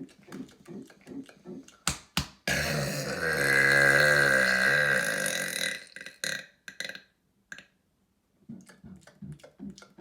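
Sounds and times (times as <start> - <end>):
man burping: 2.5 - 7.0.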